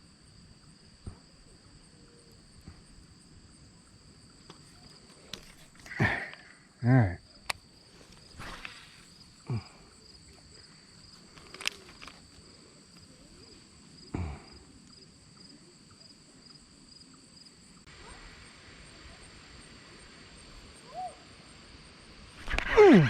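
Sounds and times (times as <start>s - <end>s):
insects trilling: 0.0s - 23.0s
short falling calls: 22.4s - 23.0s.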